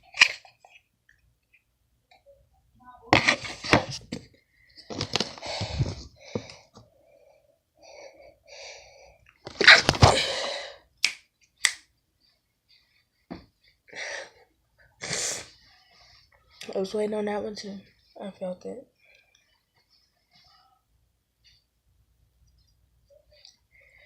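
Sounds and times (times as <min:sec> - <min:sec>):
person sneezing: 0:09.5 - 0:10.6.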